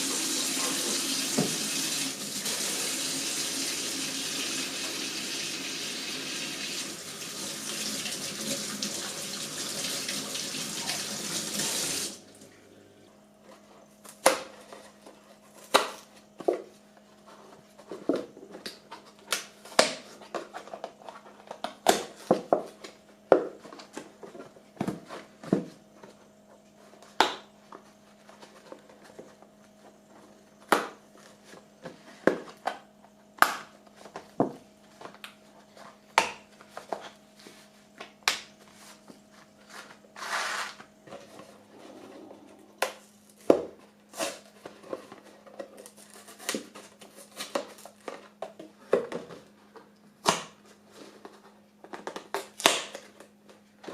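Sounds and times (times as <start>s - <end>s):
steady low hum: 40.8s - 44.8s.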